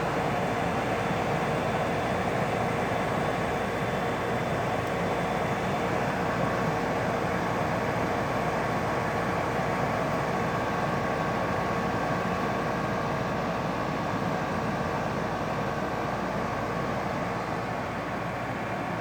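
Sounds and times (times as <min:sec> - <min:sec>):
air conditioner fan humming: 0:00.0 - 0:10.4.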